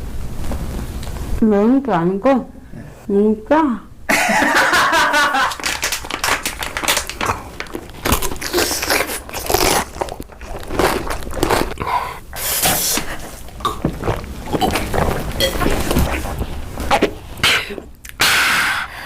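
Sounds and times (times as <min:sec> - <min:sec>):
chewing crisp food: 0:05.6 - 0:17.1.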